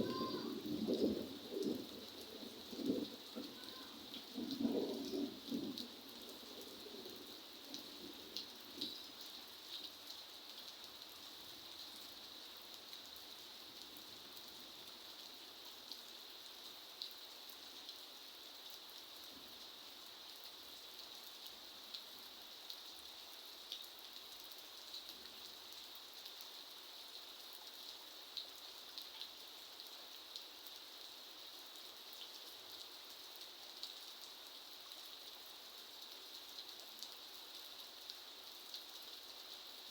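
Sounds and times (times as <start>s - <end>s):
raindrops landing: 0.0s - 1.9s
steady rain hiss: 0.0s - 39.9s.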